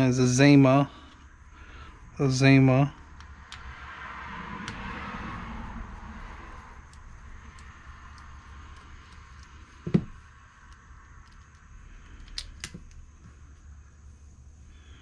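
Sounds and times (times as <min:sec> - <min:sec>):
small parts ticking: 0:06.8 - 0:09.7.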